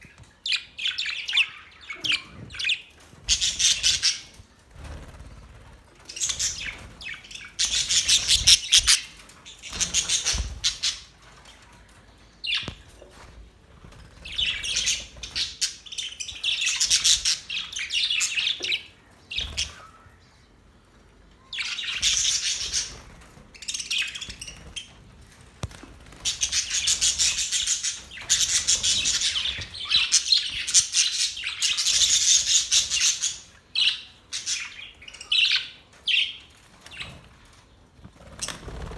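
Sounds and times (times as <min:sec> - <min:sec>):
budgerigars chirping and chattering: 0:00.1 - 0:05.3, 0:06.0 - 0:11.4, 0:12.0 - 0:12.9, 0:14.1 - 0:20.0, 0:21.5 - 0:25.0, 0:26.1 - 0:37.2.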